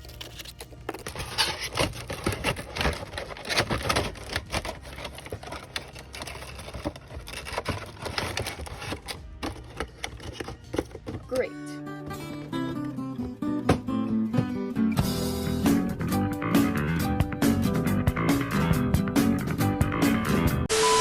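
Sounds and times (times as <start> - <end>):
plastic clicking and clattering: 0.2 - 11.5.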